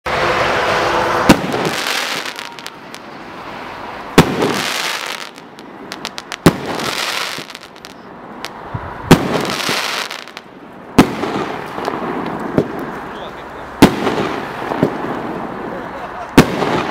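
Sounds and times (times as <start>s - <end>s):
firework bangs: 0.1s - 16.9s
crackling hiss of bursting shells: 4.2s - 8.6s.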